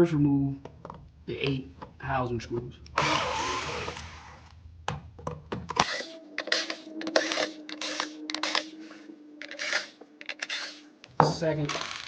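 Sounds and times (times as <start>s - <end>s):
metallic clicks and clinks of screws: 9.4s - 10.7s.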